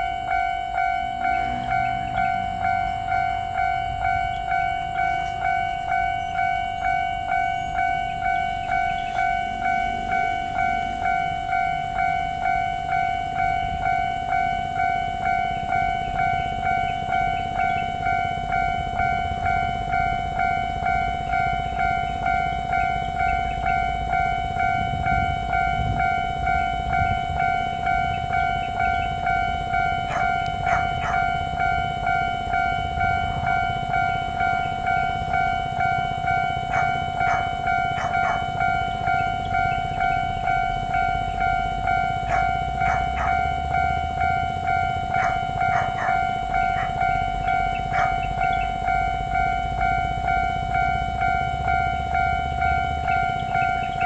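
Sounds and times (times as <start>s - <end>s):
train rumbling: 0.0s - 54.0s
wheel and rail clicks: 27.4s - 54.0s.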